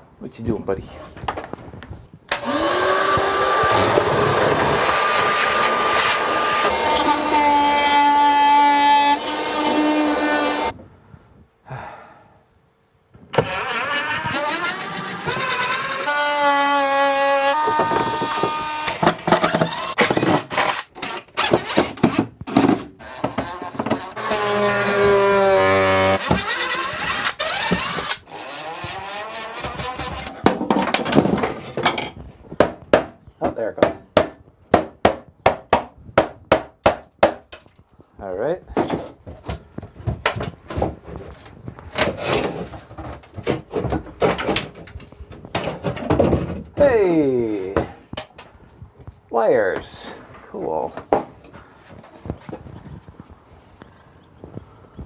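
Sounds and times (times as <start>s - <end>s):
wood scraping and rubbing: 2.4s - 10.8s, 13.4s - 32.5s, 38.8s - 48.1s
wood cracking and creaking: 13.2s - 33.6s, 38.7s - 46.9s
sharp knocks on wood: 32.6s - 37.6s.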